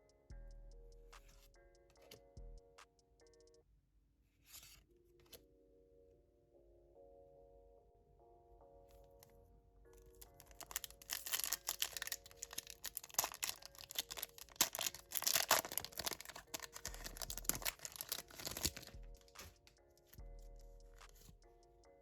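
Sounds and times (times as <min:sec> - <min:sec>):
soft background music: 0:00.0 - 0:03.7, 0:04.5 - 0:22.0
packaging tearing and crinkling: 0:10.2 - 0:19.0.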